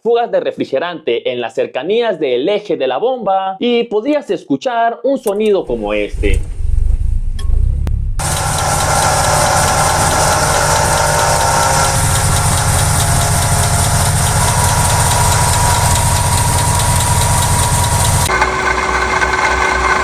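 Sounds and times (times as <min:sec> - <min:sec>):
car engine running: 0:06.2 - 0:20.0
water pump bearing whine: 0:07.2 - 0:20.0.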